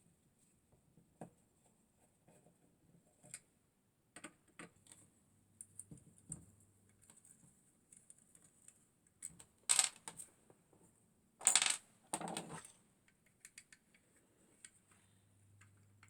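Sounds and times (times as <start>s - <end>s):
small metal parts clinking: 9.7s - 10.1s, 11.4s - 12.3s.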